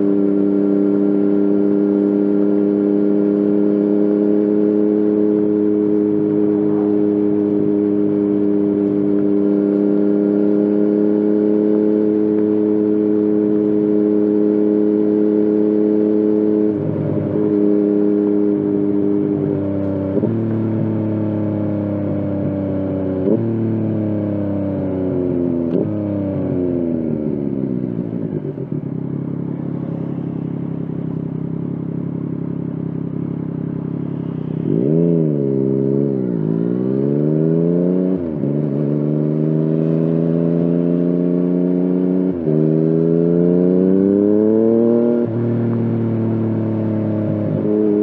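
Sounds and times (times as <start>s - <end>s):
motorcycle engine accelerating: 0.0s - 48.0s.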